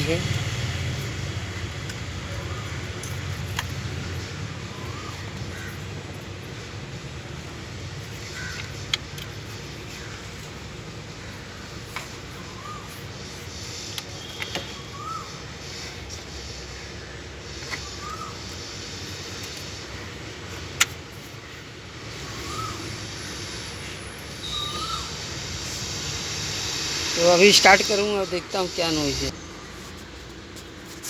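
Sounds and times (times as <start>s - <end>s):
steady background hiss: 0.0s - 31.0s
short rising-and-falling chirp: 22.1s - 29.3s.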